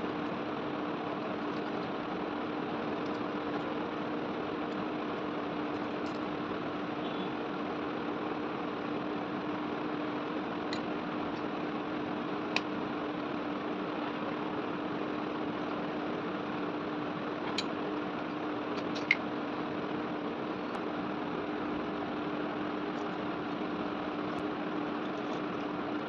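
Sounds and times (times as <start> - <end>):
motor hum: 0.0 - 26.0.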